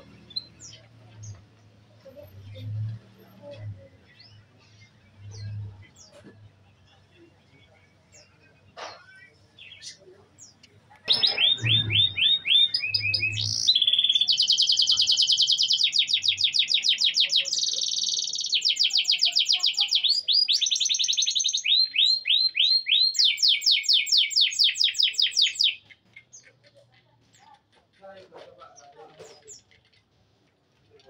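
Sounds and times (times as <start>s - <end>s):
canary singing trills: 9.0s - 26.7s.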